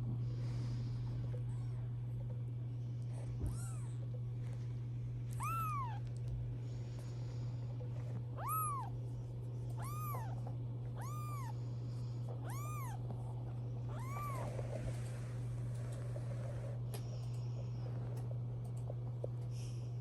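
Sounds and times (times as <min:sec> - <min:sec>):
kitten meowing: 0:03.4 - 0:04.0, 0:05.3 - 0:06.2, 0:08.4 - 0:09.0, 0:09.8 - 0:11.6, 0:12.4 - 0:13.0, 0:13.9 - 0:14.6.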